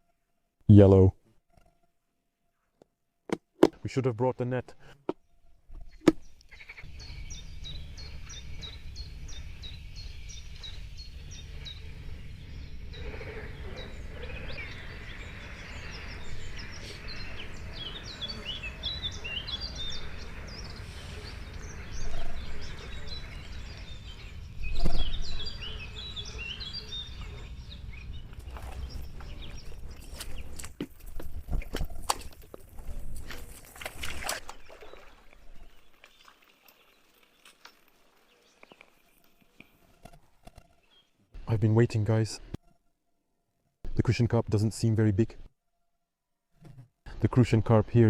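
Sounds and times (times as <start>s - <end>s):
small birds chirping: 4.9s - 42.6s.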